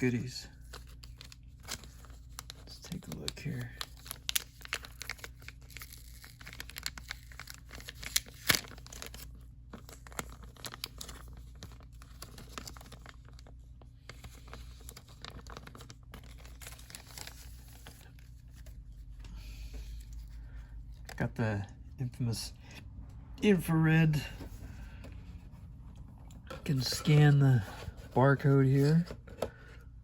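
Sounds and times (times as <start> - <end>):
packaging crinkling and rustling: 0.5 - 21.2.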